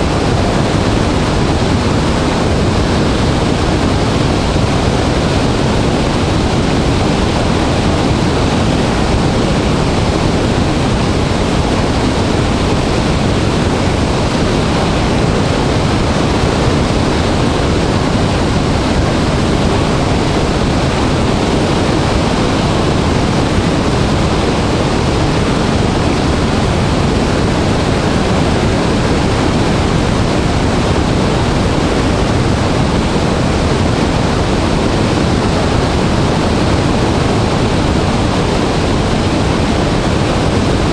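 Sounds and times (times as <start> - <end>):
waterfall roaring: 0.0 - 40.9.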